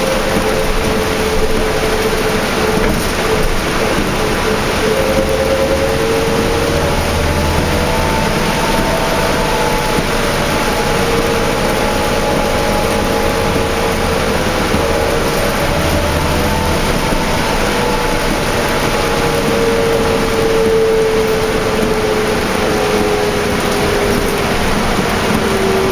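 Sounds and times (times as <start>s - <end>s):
bus driveline tones: 0.0s - 25.9s
heavy rain and road spray: 0.0s - 25.9s
low engine hum: 0.0s - 25.9s.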